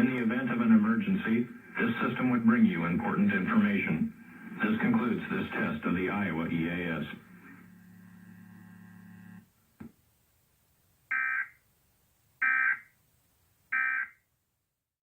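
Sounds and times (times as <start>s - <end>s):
low steady hum: 0.0s - 11.0s
harsh digital squawks: 11.1s - 11.6s, 12.4s - 12.9s, 13.7s - 14.2s.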